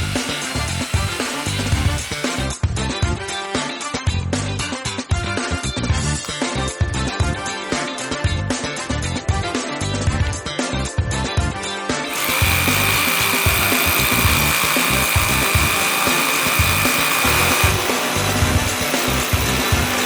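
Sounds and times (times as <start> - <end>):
high whine of drill: 0.0 - 2.5, 12.1 - 20.0
rotary hammer drill running: 0.0 - 2.5, 12.1 - 20.0
background music with a beat: 0.8 - 20.0.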